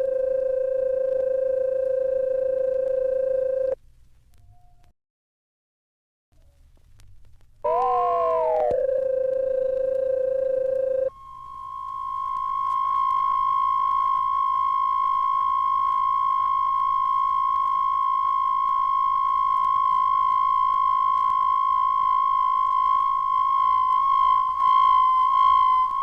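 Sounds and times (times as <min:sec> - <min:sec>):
high electronic tone: 0:07.7 - 0:26.0.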